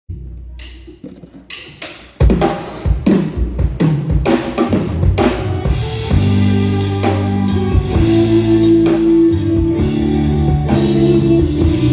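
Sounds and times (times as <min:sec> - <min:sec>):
drum kit steady beat: 0:00.1 - 0:11.9
sustained bass and guitar: 0:04.7 - 0:11.9.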